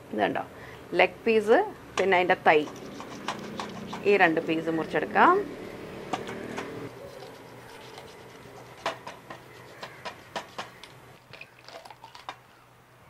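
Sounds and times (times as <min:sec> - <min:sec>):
knife cutting raw chicken: 0:02.6 - 0:04.2, 0:06.2 - 0:10.8.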